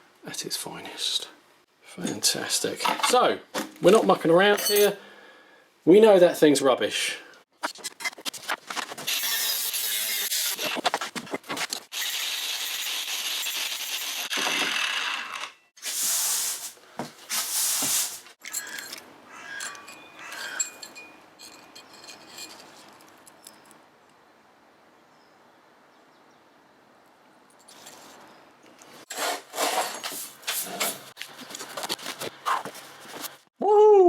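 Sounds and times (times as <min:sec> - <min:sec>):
hand tool rasping wood: 0:29.1 - 0:31.2.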